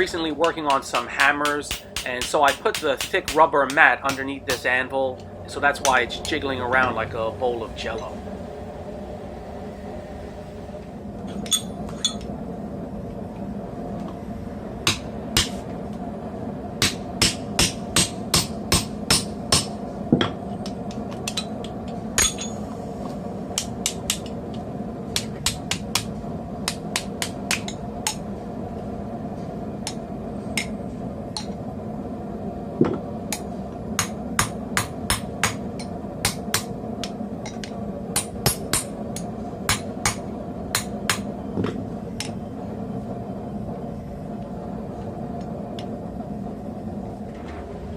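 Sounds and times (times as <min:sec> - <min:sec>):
hammer striking steel on anvil: 0:00.0 - 0:04.9, 0:16.8 - 0:21.5, 0:34.0 - 0:36.7, 0:37.5 - 0:39.0, 0:39.7 - 0:41.3
steady low hum: 0:00.0 - 0:47.9.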